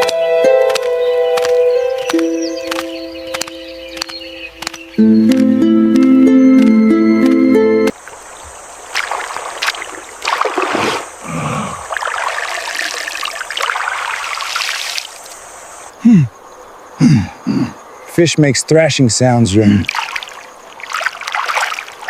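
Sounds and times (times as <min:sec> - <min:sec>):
water splashing and trickling: 0:07.9 - 0:15.8, 0:19.6 - 0:22.0.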